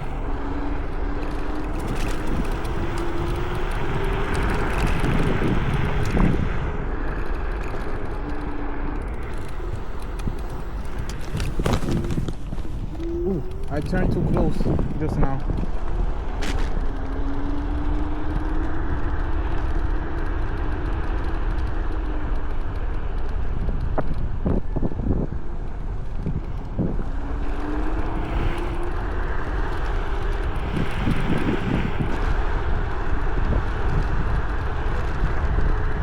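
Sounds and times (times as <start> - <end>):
tyre noise: 0.0 - 19.6
scooter motor whine: 0.0 - 36.0
wind rushing over microphone: 0.0 - 36.0.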